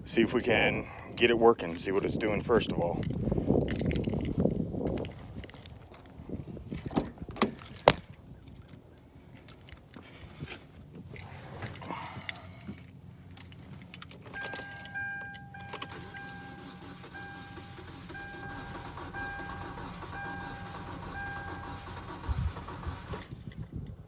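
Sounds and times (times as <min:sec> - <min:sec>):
keys jangling: 0:11.8 - 0:17.6
car warning chime beeping: 0:14.3 - 0:22.3.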